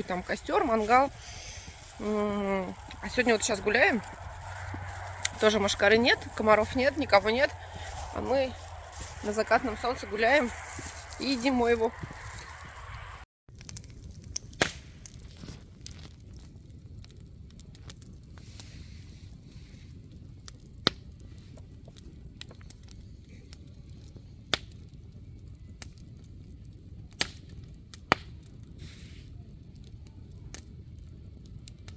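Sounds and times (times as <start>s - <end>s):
wood cracking and popping: 0.0s - 18.3s
bonfire rumble: 0.0s - 31.9s.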